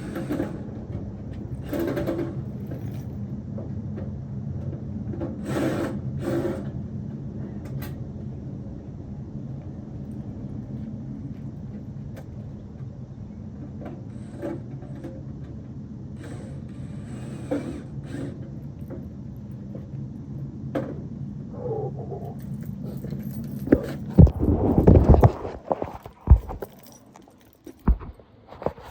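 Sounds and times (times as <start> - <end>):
air conditioner humming: 0.0 - 28.9
light clicks and rattles: 22.2 - 28.9
loud scraping and knocking: 23.6 - 28.9.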